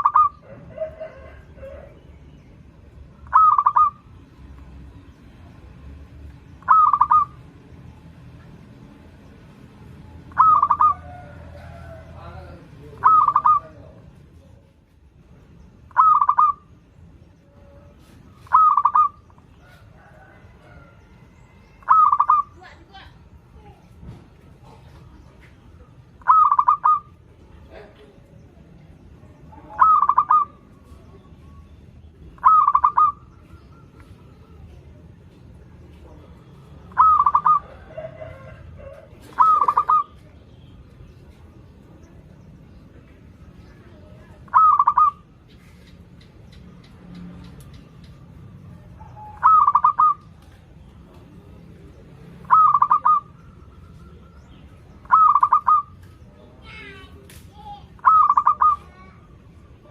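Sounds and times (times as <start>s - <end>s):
dove cooing: 0.0s - 2.0s, 3.2s - 4.2s, 6.6s - 7.5s, 10.3s - 12.0s, 13.0s - 13.9s, 15.9s - 16.7s, 18.4s - 21.0s, 21.8s - 22.6s, 26.2s - 28.4s, 29.5s - 31.6s, 32.4s - 34.7s, 36.9s - 40.2s, 44.4s - 46.1s, 48.9s - 50.7s, 51.8s - 56.0s, 58.0s - 59.1s.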